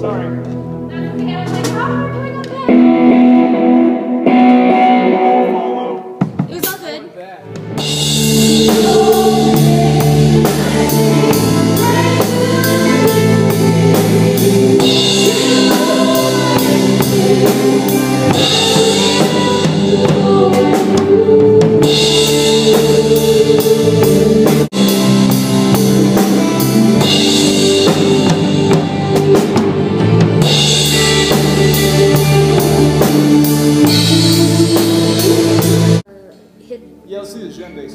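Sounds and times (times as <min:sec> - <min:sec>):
live band playing: 0:00.0 - 0:37.9
drum kit beat: 0:01.2 - 0:36.1
person singing: 0:08.2 - 0:24.9, 0:30.5 - 0:36.0.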